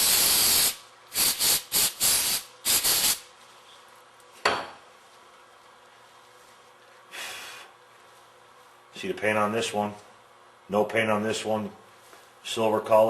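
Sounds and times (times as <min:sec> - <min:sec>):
aerosol can spraying: 0:00.0 - 0:03.3.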